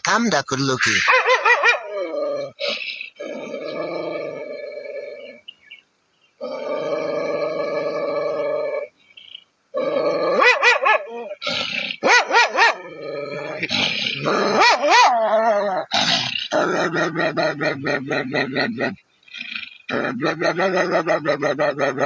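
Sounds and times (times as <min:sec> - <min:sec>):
dog howling in wavering calls: 0:01.0 - 0:02.6, 0:10.3 - 0:11.4, 0:14.5 - 0:15.9, 0:19.9 - 0:22.0.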